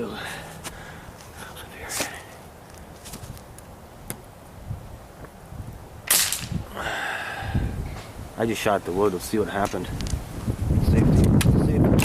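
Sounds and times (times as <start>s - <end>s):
air rifle firing crack: 6.1s - 6.6s.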